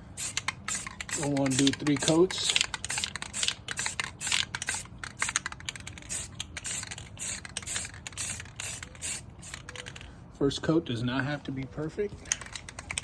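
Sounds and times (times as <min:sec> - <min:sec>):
spray paint can bursts: 0:00.2 - 0:10.0.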